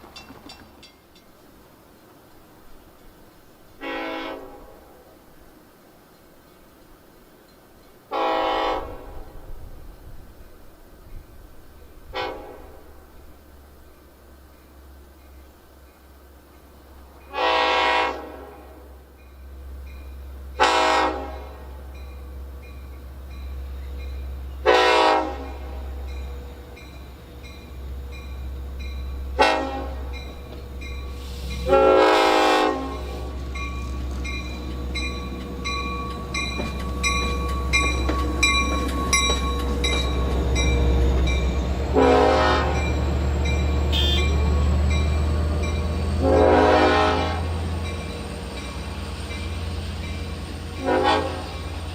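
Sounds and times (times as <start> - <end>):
locomotive horn blasts: 3.8 - 4.9, 8.1 - 9.3, 12.1 - 13.0, 17.3 - 19.0, 20.6 - 22.0, 24.6 - 26.1, 29.3 - 30.3, 31.1 - 33.6, 41.9 - 43.0, 43.8 - 44.6, 46.1 - 47.7, 50.7 - 51.8
deep locomotive rumble: 8.4 - 51.9.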